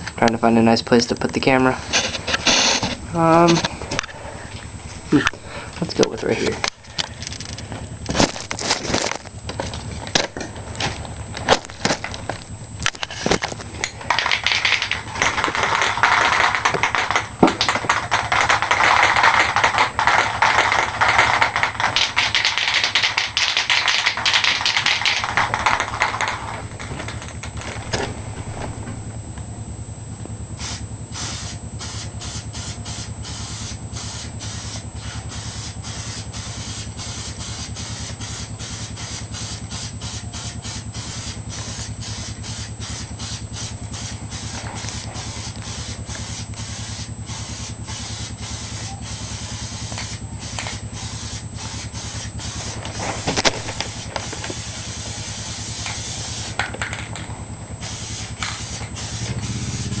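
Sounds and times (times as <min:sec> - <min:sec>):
steady low hum: 0:00.0 - 1:00.0
aerosol spray can hissing: 0:01.9 - 0:03.6, 0:14.1 - 0:27.6, 0:30.6 - 0:56.7, 0:57.8 - 1:00.0.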